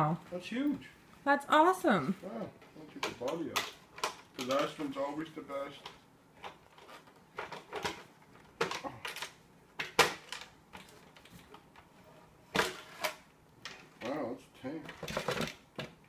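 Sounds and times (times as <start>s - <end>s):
hard plastic knocks and clatter: 14.8s - 16.0s.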